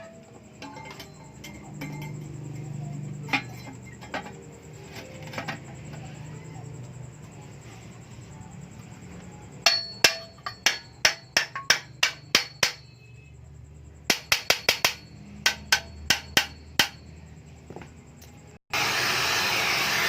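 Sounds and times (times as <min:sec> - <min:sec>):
hammer striking metal muffler: 0:09.6 - 0:13.1, 0:14.1 - 0:17.2.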